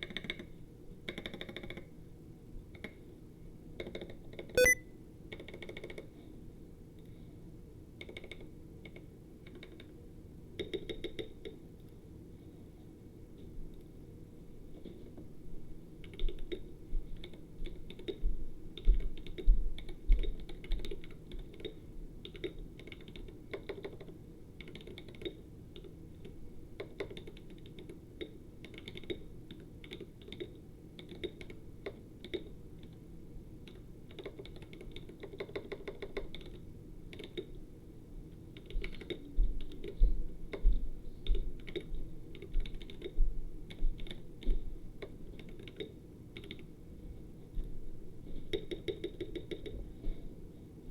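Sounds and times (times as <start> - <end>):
mechanical keyboard typing: 4.0 - 4.8, 16.0 - 16.6, 18.8 - 32.5, 33.6 - 37.5, 38.6 - 40.0, 41.3 - 44.2, 45.0 - 46.7, 48.5 - 49.7.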